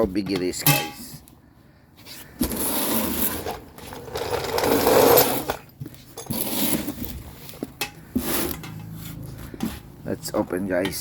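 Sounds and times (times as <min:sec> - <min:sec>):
cardboard box scraping and rustling: 0:02.1 - 0:09.9.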